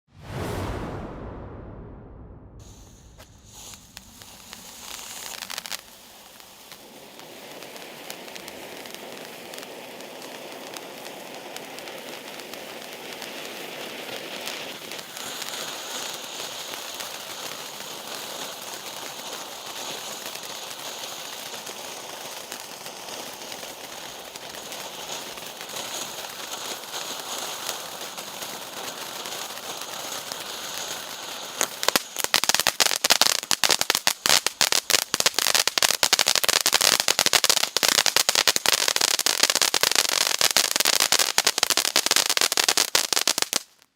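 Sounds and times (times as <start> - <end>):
firework hissing crackle: 2.4 - 43.9
sharp crackling pops: 2.6 - 13.6, 22.5 - 43.9.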